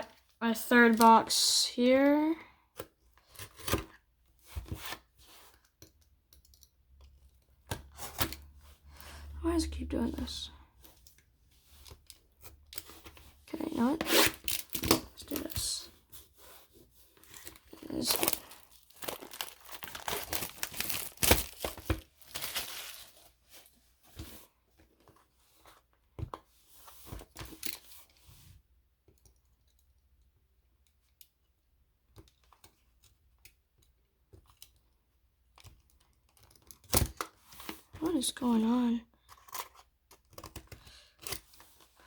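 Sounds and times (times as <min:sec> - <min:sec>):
plastic shrink-wrap tearing: 0:17.3 - 0:23.2.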